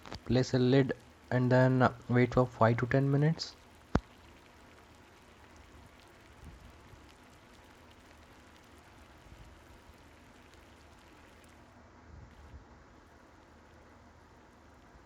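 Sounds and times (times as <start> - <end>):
soft crackles: 0.0 - 15.0
pot hissing on stove: 3.5 - 11.6.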